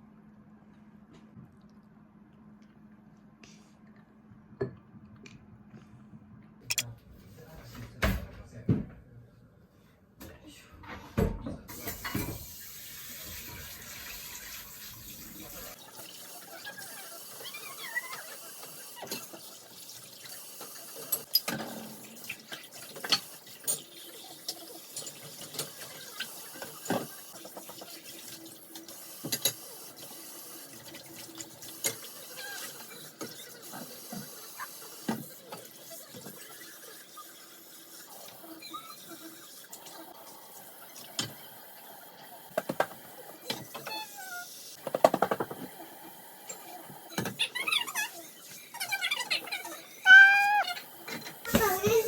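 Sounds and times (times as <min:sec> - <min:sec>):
tap water running into sink: 0:11.7 - 0:47.5.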